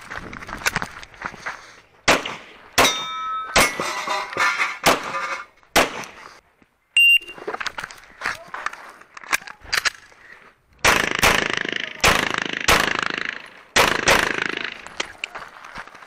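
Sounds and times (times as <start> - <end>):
pistol shots: 2.1 - 3.8, 5.7 - 6.2, 10.8 - 14.9
steel targets clanging: 2.8 - 5.6.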